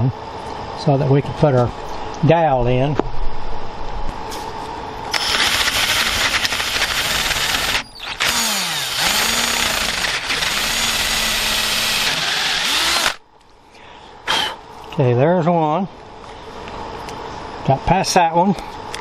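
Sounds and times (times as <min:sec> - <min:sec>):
electric drill boring into wood: 0:05.1 - 0:13.2, 0:14.3 - 0:14.6.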